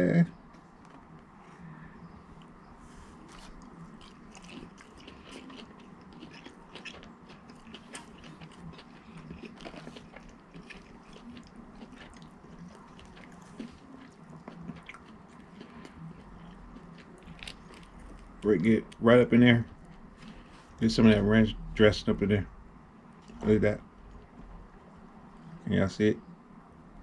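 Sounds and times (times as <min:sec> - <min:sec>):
person chewing food: 0:00.8 - 0:19.0, 0:19.7 - 0:20.8.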